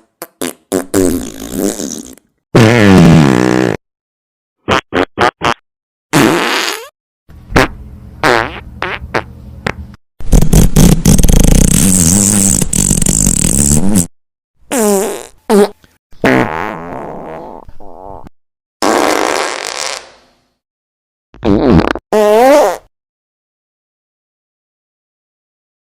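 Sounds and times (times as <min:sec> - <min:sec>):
fart sound effects: 0:00.2 - 0:03.8, 0:04.6 - 0:06.9, 0:07.5 - 0:14.1, 0:14.7 - 0:20.2, 0:21.4 - 0:22.9.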